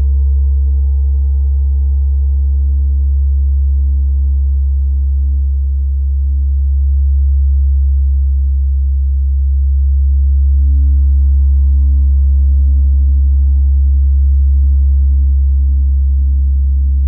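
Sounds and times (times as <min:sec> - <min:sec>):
gong drone: 0:10.1 - 0:17.0.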